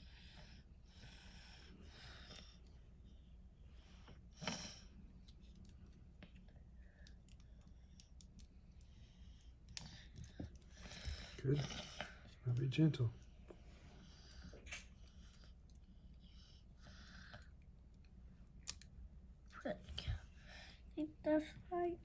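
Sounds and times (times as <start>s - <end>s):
plastic parts clicking together: 18.6s - 18.9s.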